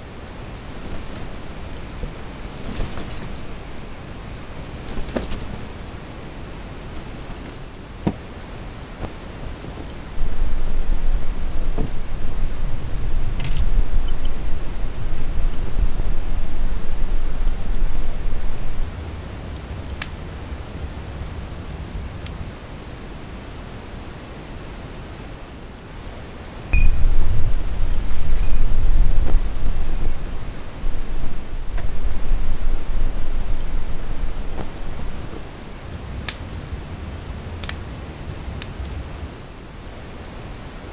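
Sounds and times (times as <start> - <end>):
insects trilling: 0.0 - 40.9
wind rumbling on microphone: 8.9 - 22.2, 26.7 - 39.4.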